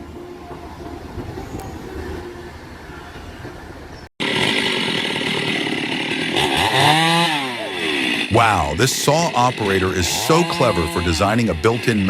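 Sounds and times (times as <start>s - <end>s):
heavy machinery rumble: 0.0s - 12.0s
chainsaw running: 4.2s - 12.0s.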